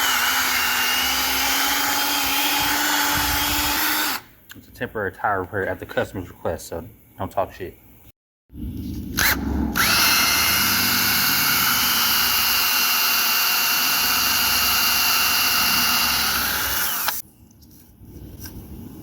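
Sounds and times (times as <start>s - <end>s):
pneumatic air tool whining: 0.0s - 4.3s, 9.2s - 17.2s.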